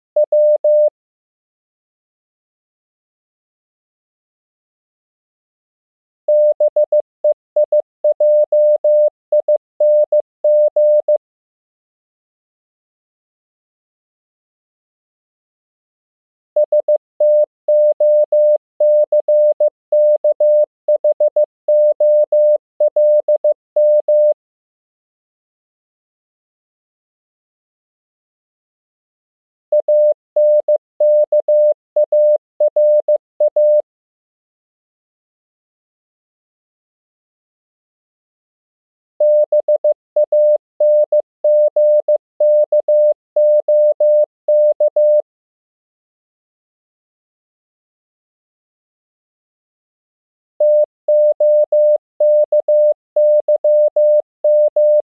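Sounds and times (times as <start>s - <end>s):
morse code electronic tone: 29.8s - 33.8s, 39.2s - 45.2s, 50.6s - 55.0s.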